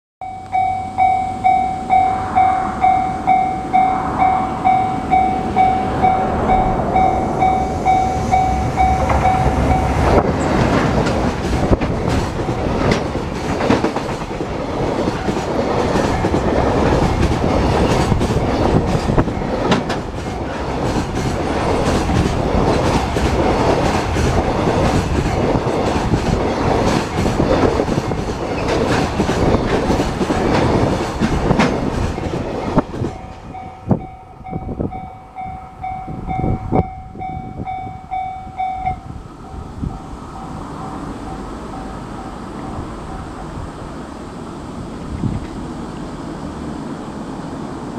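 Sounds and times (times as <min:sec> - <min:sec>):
level crossing bell ringing: 0:00.2 - 0:10.1, 0:33.2 - 0:39.1
freight train passing: 0:00.2 - 0:47.9
wheels clattering over rail joints: 0:07.7 - 0:34.1.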